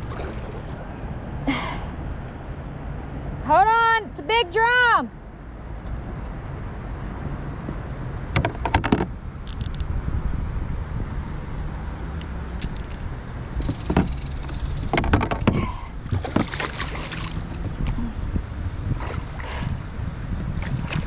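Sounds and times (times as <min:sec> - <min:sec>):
wind and water rumble: 0:00.0 - 0:21.0
clicks and knocks from boat gear: 0:08.3 - 0:09.9, 0:12.6 - 0:13.0, 0:13.6 - 0:16.9.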